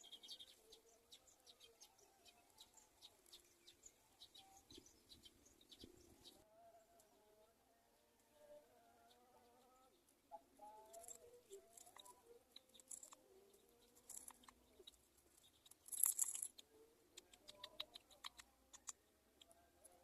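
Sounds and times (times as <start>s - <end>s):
small clicks and rustles: 10.9s - 13.2s, 13.8s - 19.0s.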